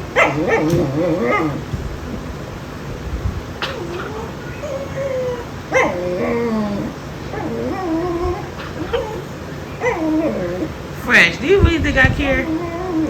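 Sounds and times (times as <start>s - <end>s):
dog whining: 0.0s - 2.0s, 3.5s - 10.9s, 12.2s - 13.0s.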